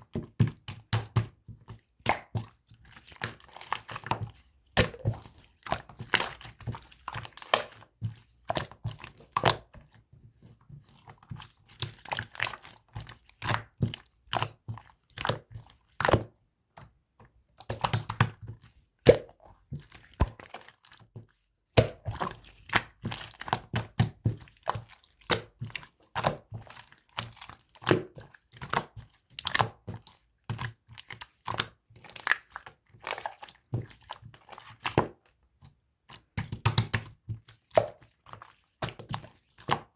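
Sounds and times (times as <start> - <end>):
slime popping and squelching: 3.0 - 9.7, 17.6 - 18.4, 21.8 - 29.8.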